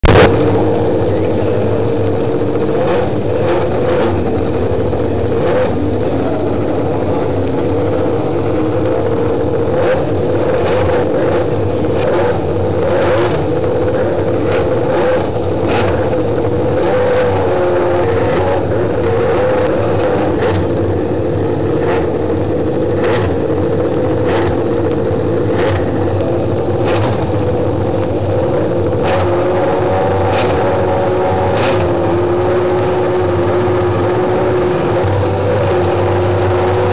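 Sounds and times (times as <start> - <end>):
motorcycle engine idling: 0.0 - 16.8, 17.6 - 29.0
sharp engine cracks: 18.1 - 30.6.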